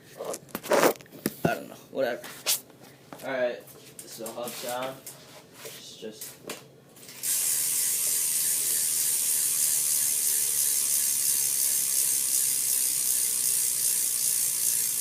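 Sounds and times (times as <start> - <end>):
bicycle hub freewheel buzzing: 7.1 - 15.0.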